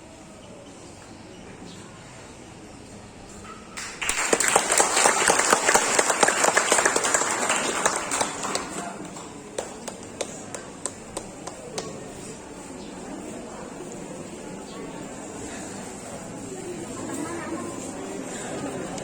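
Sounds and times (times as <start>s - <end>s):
audience applauding: 3.8s - 11.6s.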